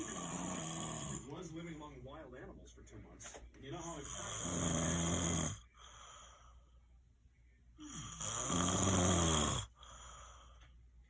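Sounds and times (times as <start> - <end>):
person snoring loudly: 0.0 - 1.3, 4.0 - 5.6, 7.8 - 9.8.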